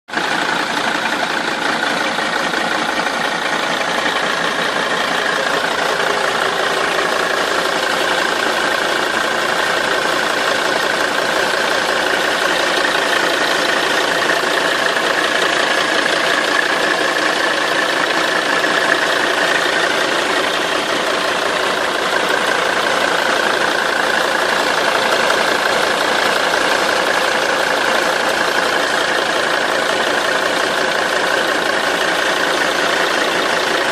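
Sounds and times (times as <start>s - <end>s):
diesel engine running: 0.1s - 33.9s
engine rattling: 0.1s - 33.9s.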